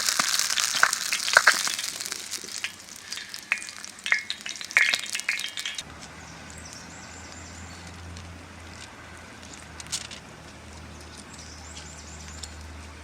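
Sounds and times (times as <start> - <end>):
sizzling crackling hiss: 0.0 - 5.9.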